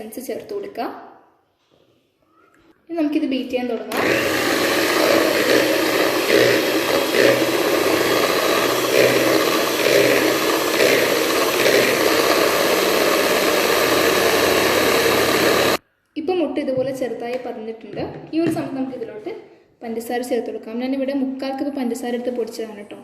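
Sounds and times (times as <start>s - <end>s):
electric hand mixer whipping: 3.9s - 15.8s.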